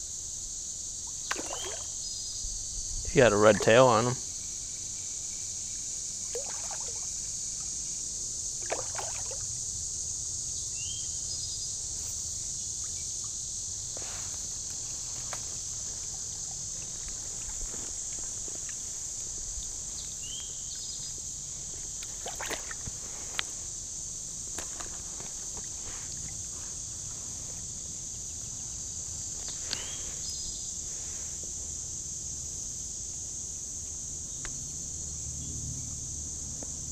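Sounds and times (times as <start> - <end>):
insect chorus: 0.0 - 36.9
small water splashes: 1.0 - 2.0, 3.4 - 4.0, 6.2 - 7.7, 8.6 - 9.5, 22.0 - 23.0
creek water sloshing: 1.1 - 2.0, 3.1 - 4.1, 6.2 - 7.2, 8.6 - 9.5, 14.4 - 20.2, 21.8 - 23.3.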